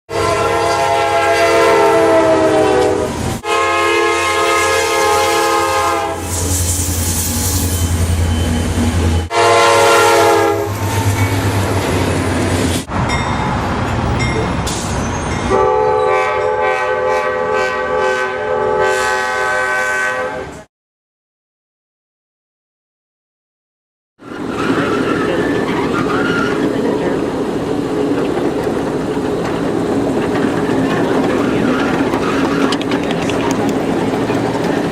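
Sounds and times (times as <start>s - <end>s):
train horn blasts: 0.1s - 6.6s, 9.3s - 11.2s, 15.5s - 20.7s
train running noise: 0.1s - 16.8s, 24.2s - 34.9s.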